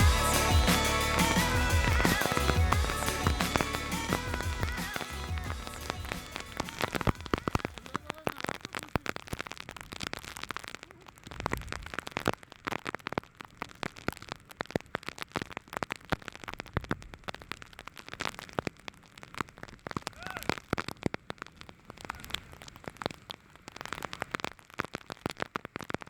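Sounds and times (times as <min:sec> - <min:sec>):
faint rain hiss: 0:00.0 - 0:09.6.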